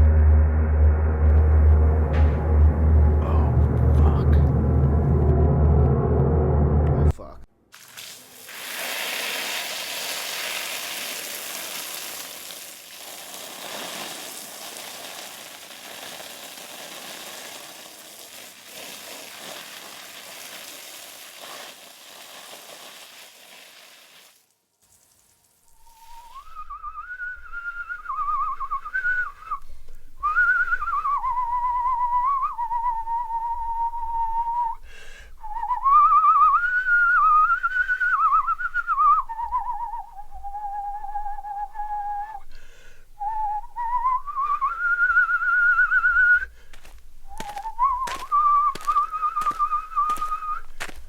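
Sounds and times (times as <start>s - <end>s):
person whistling a melody: 25.9s - 34.8s, 35.4s - 42.5s, 43.2s - 46.5s, 47.3s - 50.7s.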